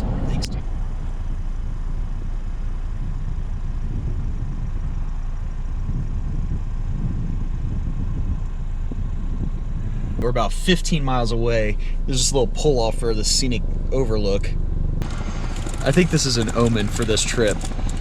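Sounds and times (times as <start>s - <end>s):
car engine and road noise: 0.0s - 18.0s.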